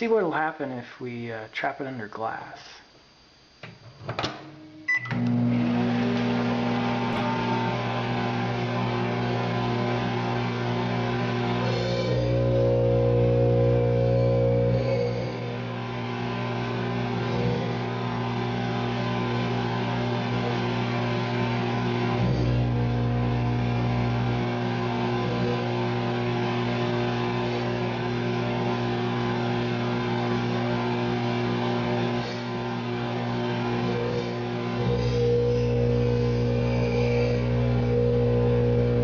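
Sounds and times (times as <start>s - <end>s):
low hum: 34.0s - 39.0s.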